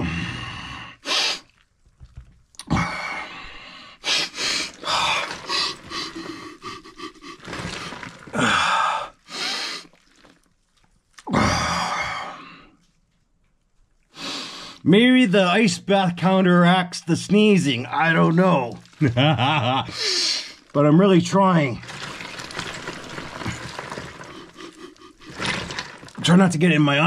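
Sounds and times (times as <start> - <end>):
person sniffing and gasping: 1.0 - 1.5, 4.0 - 10.0.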